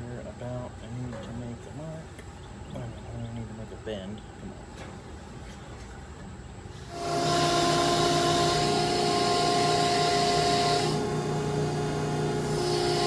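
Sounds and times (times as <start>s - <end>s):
rotary power tool whining: 6.8s - 13.0s.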